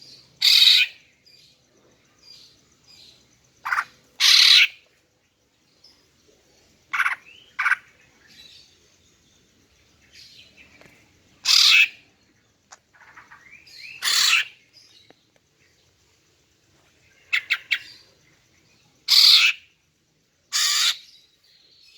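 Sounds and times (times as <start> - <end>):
bird calling high and loud: 0.0 - 1.0, 3.6 - 4.9, 6.9 - 8.4, 10.8 - 12.1, 12.7 - 14.8, 17.1 - 18.1, 19.1 - 19.8, 20.5 - 21.4
faint bird chirps: 0.0 - 21.9.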